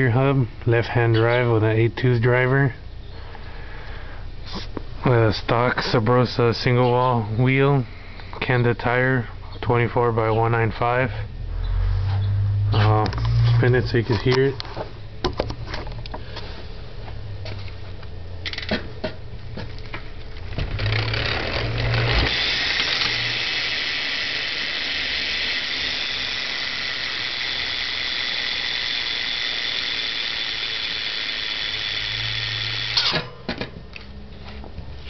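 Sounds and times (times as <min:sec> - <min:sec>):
freewheel ratchet buzzing: 0:11.3 - 0:14.5, 0:18.4 - 0:19.1, 0:19.7 - 0:33.4.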